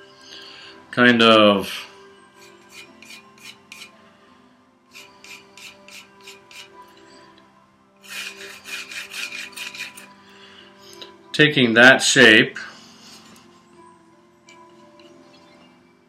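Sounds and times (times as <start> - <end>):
hand tool scraping wood: 2.4 - 3.9, 4.9 - 6.8, 8.0 - 10.1.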